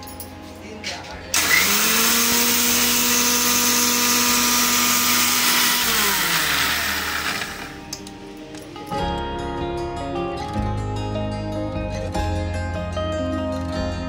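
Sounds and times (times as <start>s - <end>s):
mixer grinder running: 1.3s - 7.9s.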